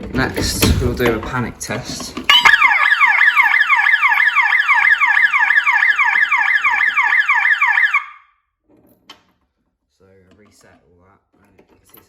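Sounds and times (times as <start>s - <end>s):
alarm siren wailing: 2.3s - 8.4s.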